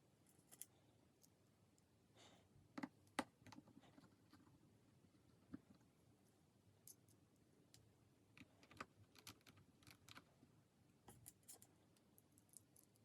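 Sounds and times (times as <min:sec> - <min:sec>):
small parts clicking and tapping: 0:06.8 - 0:10.3, 0:11.1 - 0:13.0.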